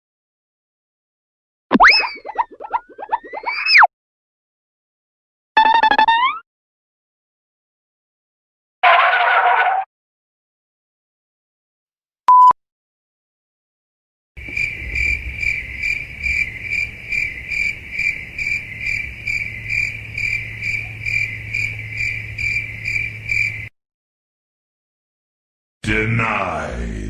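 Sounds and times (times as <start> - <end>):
crickets chirping sound effect: 14.4 - 23.7
low hum: 14.4 - 23.7.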